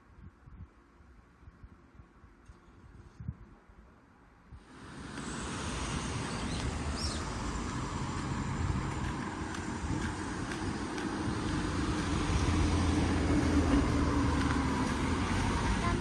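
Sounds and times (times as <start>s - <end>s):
vehicle engines and tyres rumbling: 4.6s - 16.0s.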